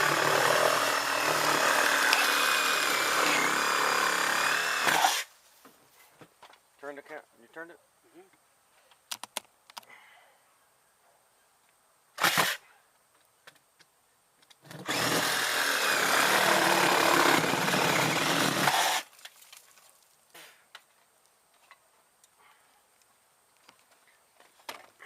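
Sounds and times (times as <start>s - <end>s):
handheld power tool running: 0.0s - 5.3s, 14.9s - 19.0s.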